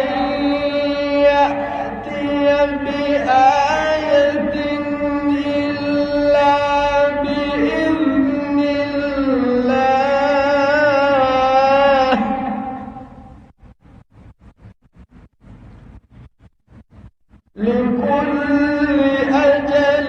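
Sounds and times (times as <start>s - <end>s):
man chanting melodically: 0.0s - 13.4s, 17.5s - 20.0s.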